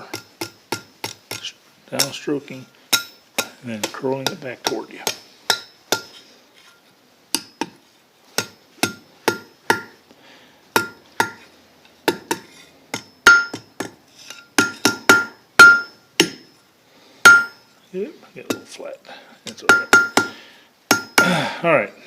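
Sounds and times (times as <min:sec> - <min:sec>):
hammer striking steel on anvil: 0:00.0 - 0:02.2, 0:02.9 - 0:06.2, 0:07.4 - 0:07.8, 0:08.4 - 0:10.0, 0:10.8 - 0:11.4, 0:12.1 - 0:16.6, 0:17.2 - 0:17.6, 0:19.5 - 0:21.4.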